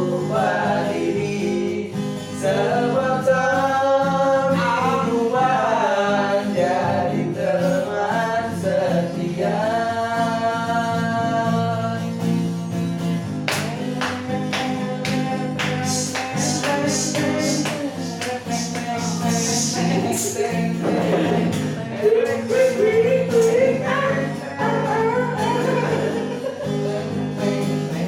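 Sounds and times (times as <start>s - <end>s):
sharp percussive strokes: 13.5s - 21.7s
sliding voice-like melody: 15.7s - 26.6s.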